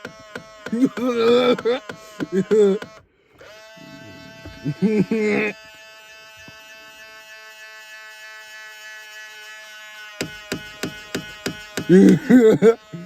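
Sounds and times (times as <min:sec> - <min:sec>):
mirror motor buzzing: 0:00.0 - 0:13.0
person laughing loudly: 0:00.7 - 0:03.0, 0:03.8 - 0:05.6, 0:11.9 - 0:13.0.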